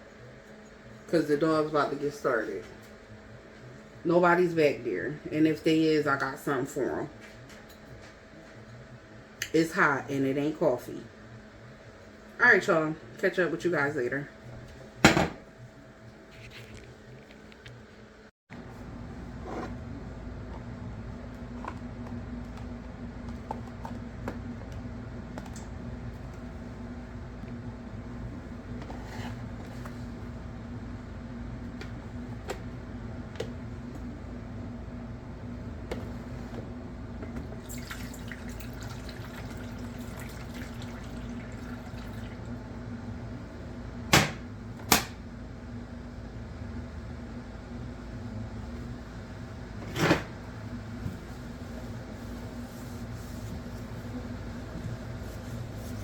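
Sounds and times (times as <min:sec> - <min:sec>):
low electrical hum: 0:00.0 - 0:56.0
faint running water: 0:37.6 - 0:42.5.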